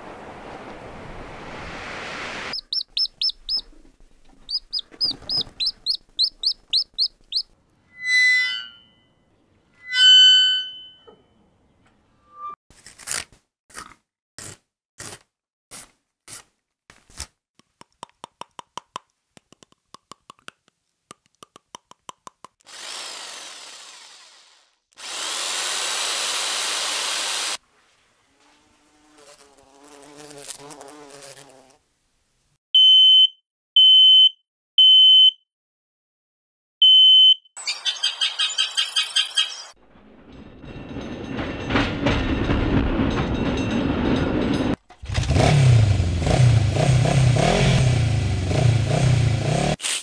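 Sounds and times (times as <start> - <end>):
burst of hiss: 25.0 - 27.6.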